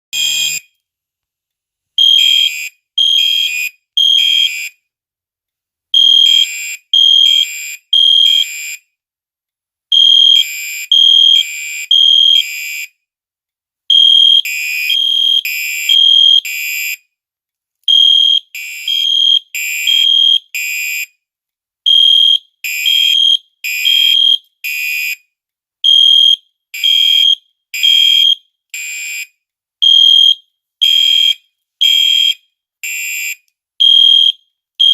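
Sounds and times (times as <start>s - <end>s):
fire alarm beeping: 0.2s - 0.7s, 2.0s - 4.7s, 6.0s - 8.8s, 9.9s - 12.9s, 13.9s - 17.0s, 17.9s - 21.1s, 21.9s - 24.5s, 25.8s - 28.4s, 29.1s - 34.9s.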